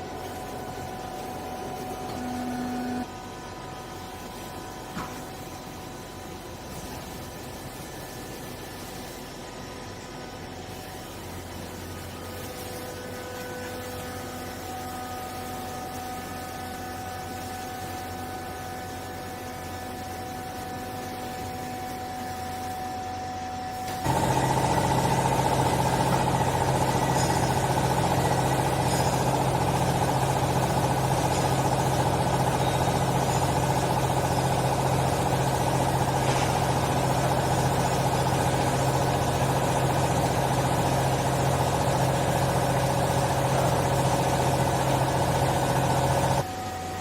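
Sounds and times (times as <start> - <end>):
hydraulic pump motor humming: 0.0 - 3.1, 23.9 - 46.5
faint machine hum: 0.0 - 47.0.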